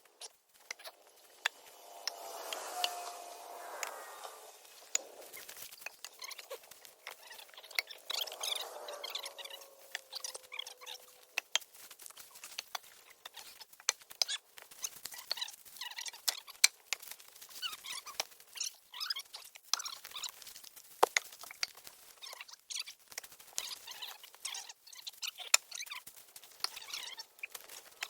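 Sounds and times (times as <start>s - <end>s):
rustling of dry brush: 0.0s - 13.1s.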